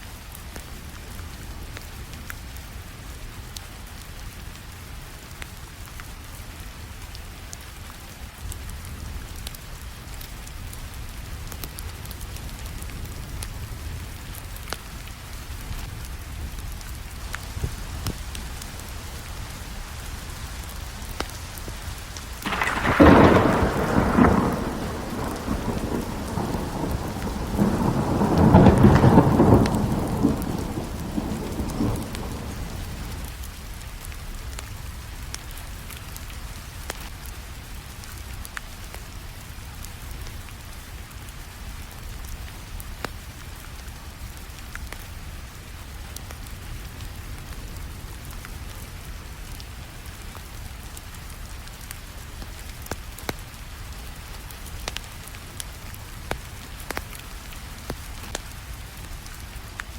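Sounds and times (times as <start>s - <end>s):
steady rain: 0.0s - 59.9s
fireplace fire crackling: 0.1s - 59.9s
rolling thunder rumble: 22.4s - 33.4s
thunderclap: 22.4s - 33.4s.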